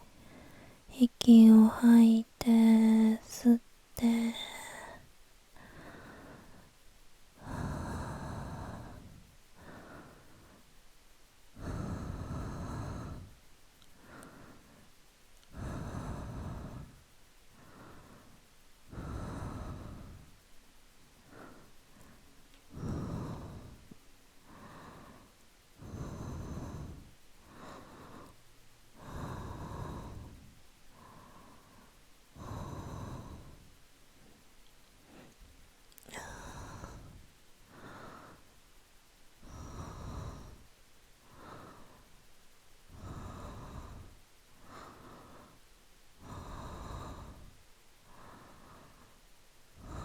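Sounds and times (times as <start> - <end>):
person breathing slowly and deeply: 0.0 - 0.9, 2.4 - 6.8, 7.4 - 10.7, 11.6 - 20.4, 21.2 - 35.5, 36.1 - 38.6, 39.4 - 42.2, 42.9 - 49.2, 49.8 - 50.0.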